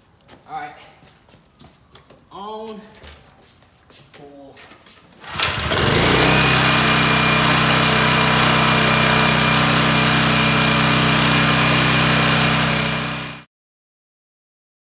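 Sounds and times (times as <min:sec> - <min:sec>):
generator engine running: 0:05.2 - 0:13.5.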